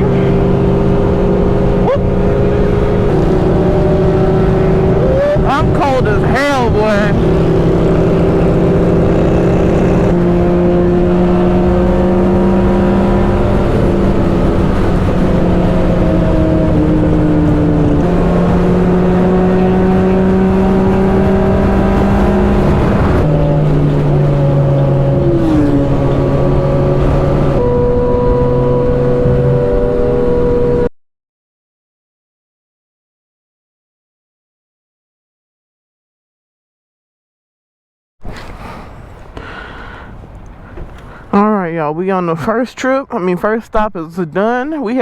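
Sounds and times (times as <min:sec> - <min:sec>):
motorcycle engine running: 0:00.0 - 0:29.6
wind rush: 0:01.0 - 0:28.1.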